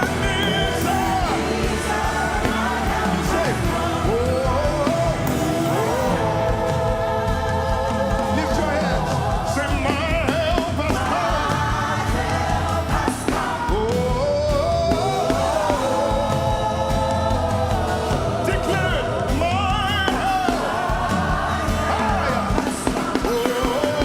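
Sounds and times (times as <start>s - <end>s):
band with low beat: 0.0s - 24.0s.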